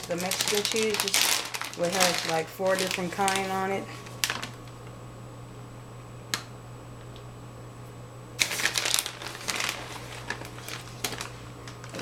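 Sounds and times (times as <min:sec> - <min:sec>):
packaging crinkling: 0:00.0 - 0:04.8, 0:08.4 - 0:12.0.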